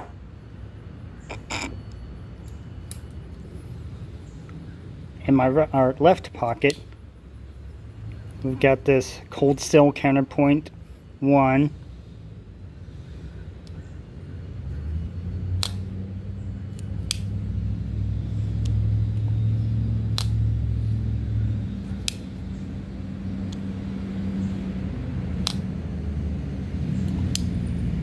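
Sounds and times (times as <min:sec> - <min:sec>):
steady low rumble: 0:00.0 - 0:28.0
folding knife clicks: 0:15.6 - 0:16.0, 0:16.7 - 0:17.4, 0:20.0 - 0:20.5, 0:22.0 - 0:22.3, 0:25.4 - 0:25.7, 0:27.0 - 0:27.5.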